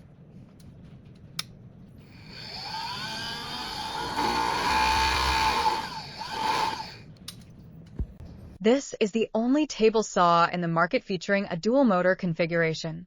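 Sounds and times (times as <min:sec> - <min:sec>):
table saw motor whine: 0:02.0 - 0:07.0.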